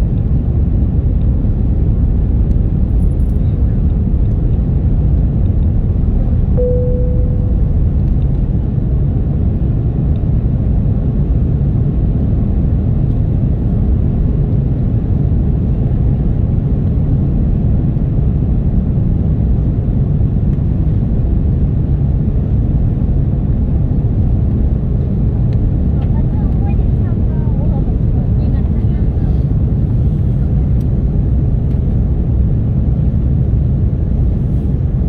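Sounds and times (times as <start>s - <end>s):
airliner cabin engine rumble: 0.0s - 35.0s
short chime tone: 6.6s - 8.2s.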